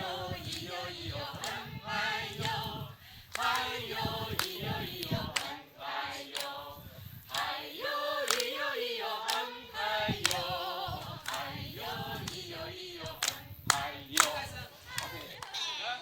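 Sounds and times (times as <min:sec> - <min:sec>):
group singing unaccompanied: 0:00.0 - 0:16.0
sharp hand claps: 0:08.2 - 0:08.6, 0:13.2 - 0:14.4.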